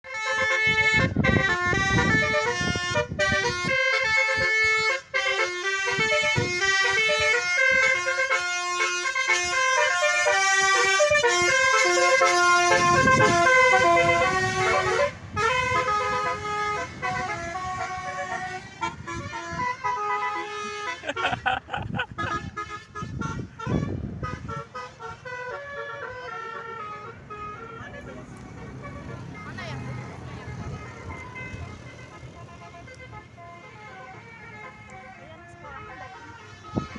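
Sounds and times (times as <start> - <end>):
multi-tone bus air horns melody: 0.0 - 36.9.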